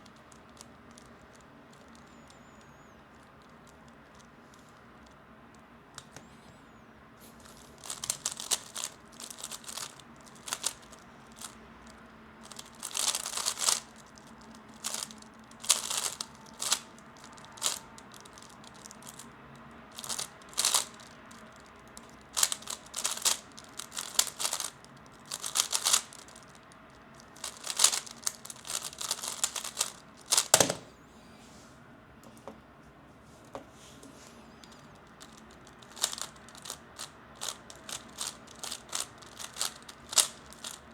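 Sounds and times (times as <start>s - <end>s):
plastic cube clicking: 7.5s - 11.6s, 12.4s - 19.2s, 20.0s - 26.5s, 27.2s - 30.8s, 35.2s - 40.9s.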